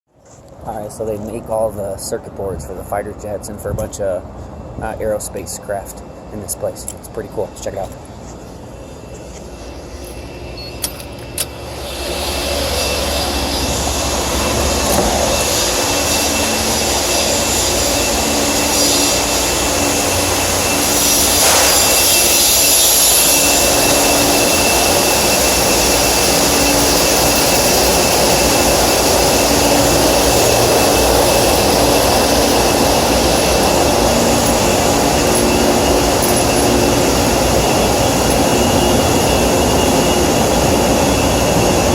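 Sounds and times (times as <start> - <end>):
thin high whine: 0.2 - 41.9
industrial machinery roar: 0.5 - 41.9
low hum: 5.5 - 41.9.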